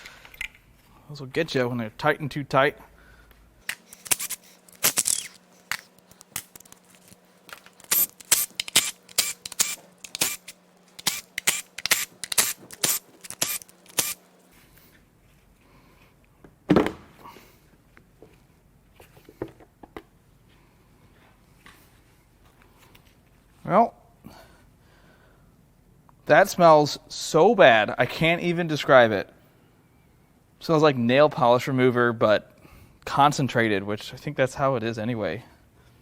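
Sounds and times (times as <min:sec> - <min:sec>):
metal tool clicks and clinks: 0:07.5 - 0:14.2.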